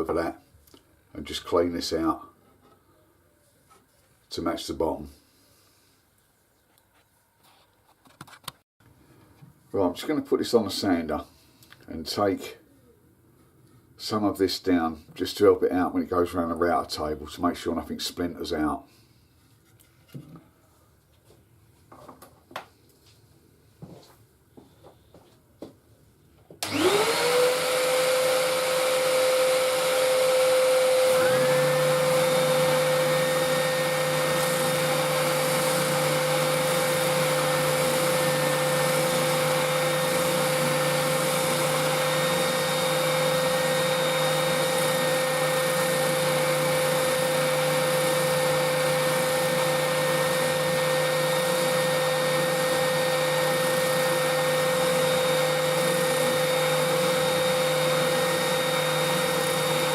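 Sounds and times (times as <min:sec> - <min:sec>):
sander motor whine: 0:26.6 - 0:59.9
second motor running: 0:26.6 - 0:59.9.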